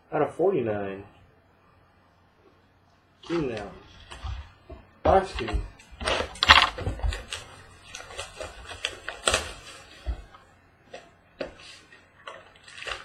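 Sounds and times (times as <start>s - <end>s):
packaging crackling rustles: 3.2s - 13.0s
wrapper tearing: 6.0s - 10.3s, 11.7s - 13.0s.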